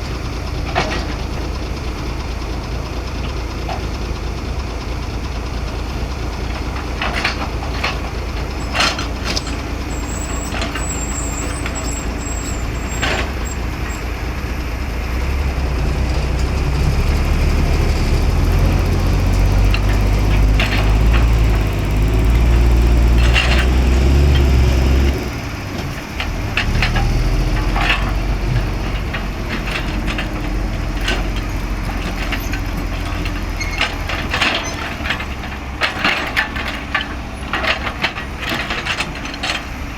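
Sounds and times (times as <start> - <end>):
diesel excavator engine: 0.0 - 39.9
knocks and clatters: 6.4 - 14.1, 15.8 - 39.8.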